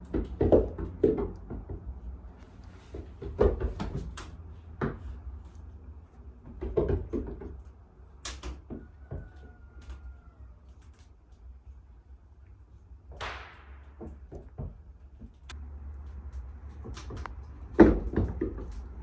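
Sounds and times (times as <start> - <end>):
sharp knocks and clatters: 0.0 - 2.1, 13.1 - 15.5
steady low hum: 15.0 - 19.0.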